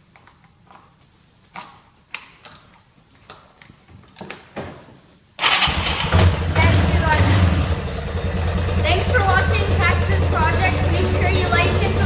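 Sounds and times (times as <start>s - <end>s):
engine running: 5.4s - 12.0s.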